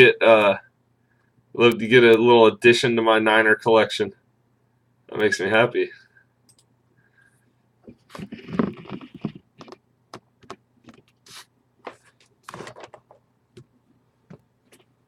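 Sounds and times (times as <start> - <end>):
irregular clicks and taps: 6.5 - 6.7, 8.3 - 11.2
rustling: 7.9 - 9.8.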